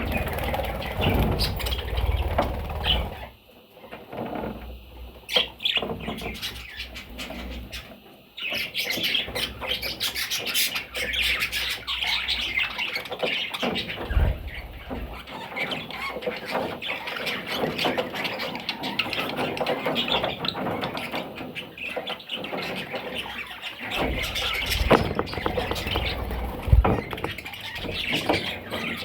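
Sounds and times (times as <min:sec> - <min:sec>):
parrots chattering and squawking: 0:00.0 - 0:03.3, 0:05.3 - 0:29.0
low bumps: 0:14.0 - 0:15.2, 0:24.0 - 0:28.2.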